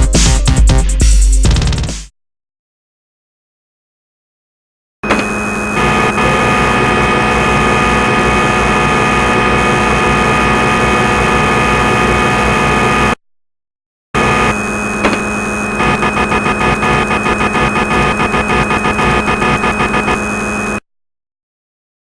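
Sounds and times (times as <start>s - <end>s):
machine hum with whining tones: 5.0s - 13.2s, 14.2s - 20.8s.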